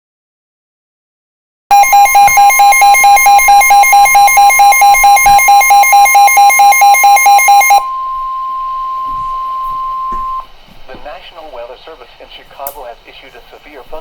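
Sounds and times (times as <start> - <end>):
electronic alarm beeping: 1.7 - 10.5
steady warning alarm tone: 1.7 - 10.5.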